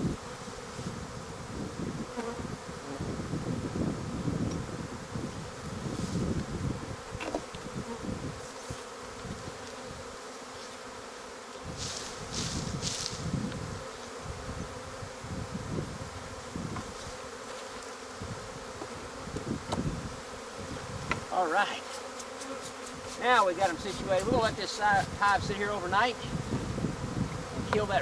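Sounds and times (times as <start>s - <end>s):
bees buzzing: 16.0s - 28.0s
low microphone rumbles: 26.2s - 28.0s
short hissing rustles: 26.2s - 28.0s.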